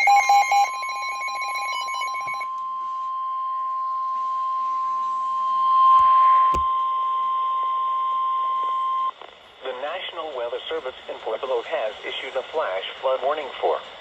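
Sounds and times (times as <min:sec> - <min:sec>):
patterned beeping: 0:00.0 - 0:02.5
steady high alarm tone: 0:00.0 - 0:09.1.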